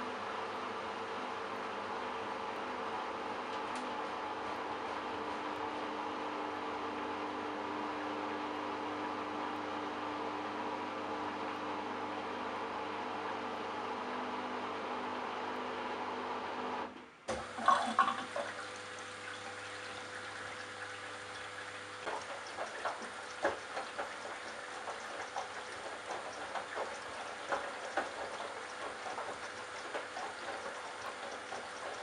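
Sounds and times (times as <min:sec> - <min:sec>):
washing machine motor hum: 0:00.0 - 0:32.0
water running into drum: 0:17.3 - 0:32.0.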